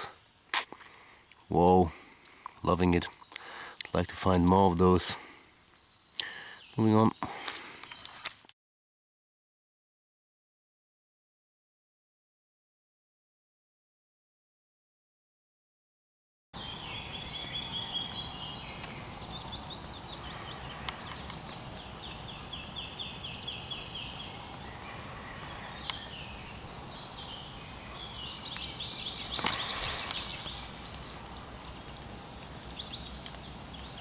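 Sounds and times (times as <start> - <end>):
songbirds singing trills: 0.0 - 8.2, 16.6 - 34.0.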